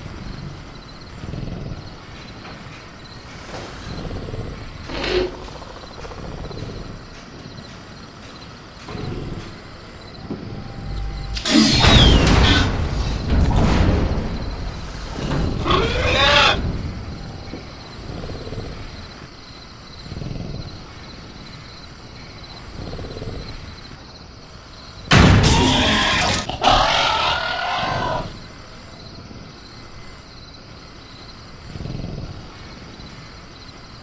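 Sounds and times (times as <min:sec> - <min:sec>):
crickets chirring: 0:00.0 - 0:34.0
creature growls: 0:03.8 - 0:07.0, 0:25.4 - 0:28.4
creature roaring screech: 0:15.6 - 0:16.6, 0:25.4 - 0:28.4.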